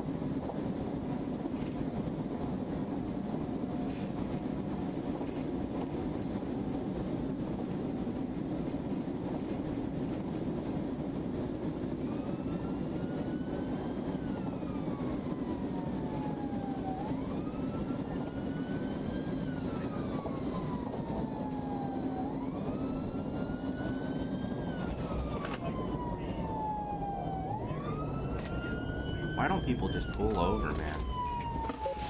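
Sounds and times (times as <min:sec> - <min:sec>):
road and engine rumble: 0:00.0 - 0:32.0
police siren wailing: 0:10.2 - 0:32.0.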